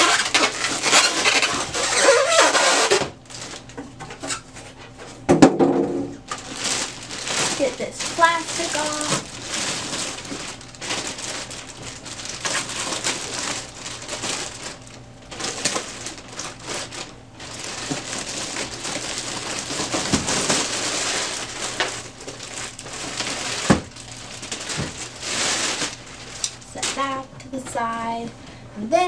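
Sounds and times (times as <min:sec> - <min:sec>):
plastic wrap crinkling: 0:00.0 - 0:05.2, 0:06.2 - 0:28.3
knocks on printer: 0:05.3 - 0:06.1.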